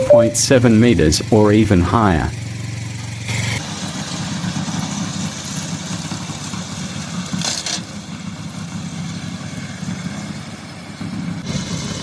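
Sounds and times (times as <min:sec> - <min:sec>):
mower engine running: 0:00.0 - 0:07.3.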